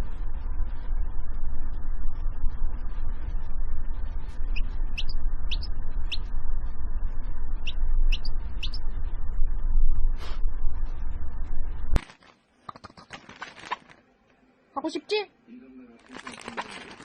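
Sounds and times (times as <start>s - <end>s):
low rumbling noise: 0.0s - 12.0s
bird chirping: 4.6s - 6.3s, 7.6s - 8.9s.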